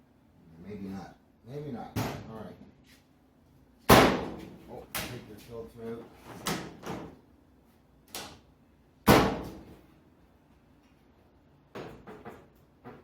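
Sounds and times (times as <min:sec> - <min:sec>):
dryer door knocks and bang: 0:03.9 - 0:04.4, 0:09.1 - 0:09.6.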